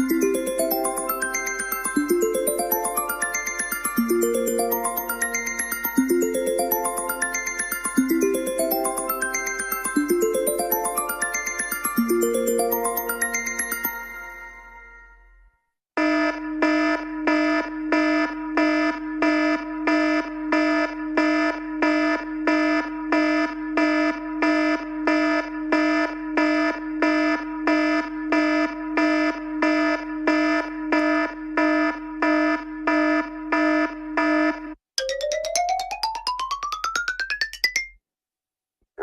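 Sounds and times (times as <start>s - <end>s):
buzzy pulsing alarm ringtone: 0.0s - 15.1s, 16.0s - 34.8s.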